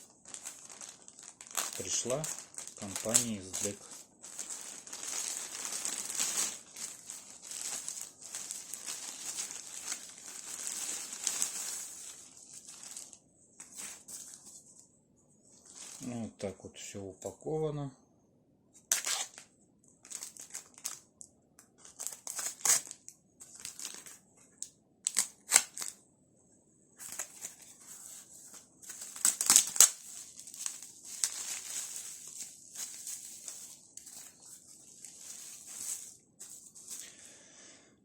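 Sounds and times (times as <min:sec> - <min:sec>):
packaging crinkling and tearing: 0:00.0 - 0:14.6, 0:18.8 - 0:19.4, 0:20.0 - 0:21.0, 0:21.8 - 0:24.2, 0:25.1 - 0:26.0, 0:27.0 - 0:37.1
sharp crackles: 0:00.3 - 0:12.2.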